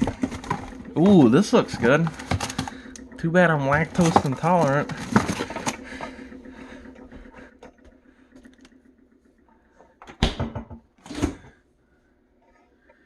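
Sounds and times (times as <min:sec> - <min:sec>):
food containers clicking: 0:00.0 - 0:06.4
containers knocking down: 0:00.0 - 0:07.6.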